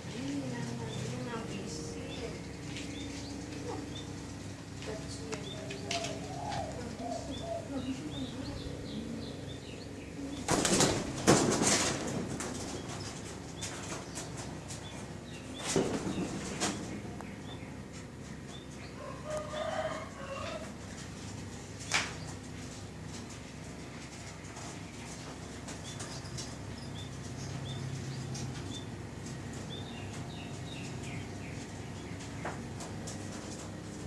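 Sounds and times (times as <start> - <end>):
pigeons cooing: 0.0 - 34.0
pigeon wings flapping: 10.4 - 14.9.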